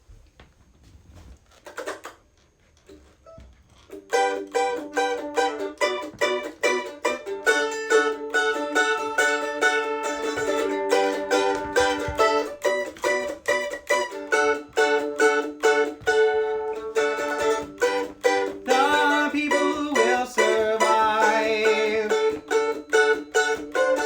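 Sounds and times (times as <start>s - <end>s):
short rustle: 0.0s - 1.7s
mandolin playing: 3.8s - 24.0s.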